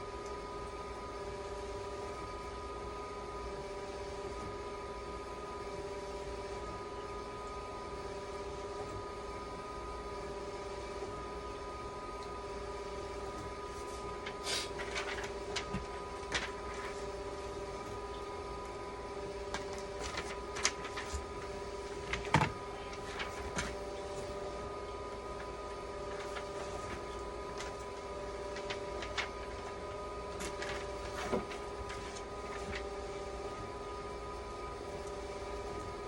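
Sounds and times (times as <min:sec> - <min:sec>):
steady mechanical hum: 0:00.0 - 0:36.0.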